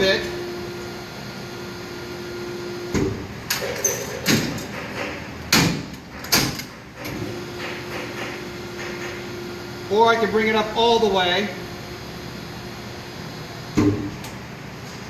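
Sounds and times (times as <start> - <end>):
metal bangs and clanks: 3.0 - 9.2.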